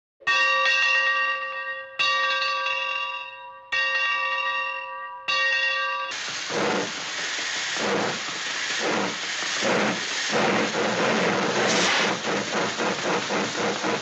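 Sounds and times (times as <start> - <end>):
loud steady hiss: 6.1 - 14.0.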